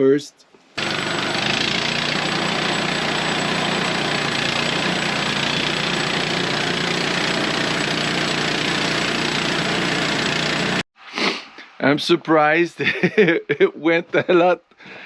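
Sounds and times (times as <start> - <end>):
sawmill engine running: 0.8 - 10.8.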